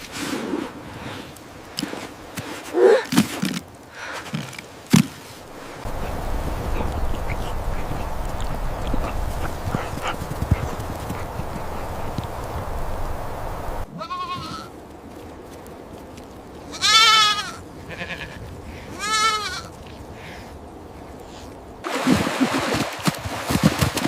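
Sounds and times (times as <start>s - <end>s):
sheep bleating: 13.9s - 14.7s.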